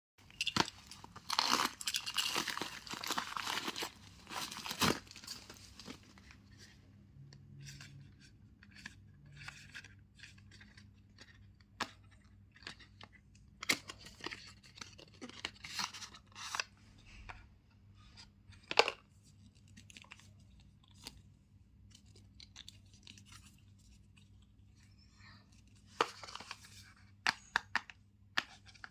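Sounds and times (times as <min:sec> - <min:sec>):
handling clicks and rustles: 0:00.2 - 0:06.4.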